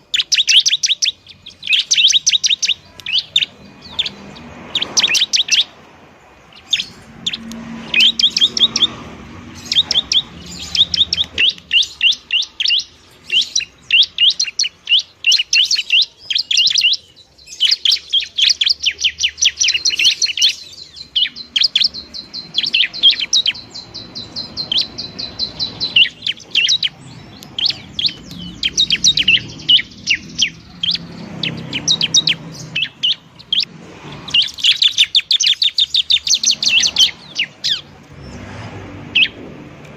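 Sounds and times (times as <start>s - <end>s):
bird high sharp chirps: 0.0s - 39.4s
bird trill: 0.0s - 39.4s.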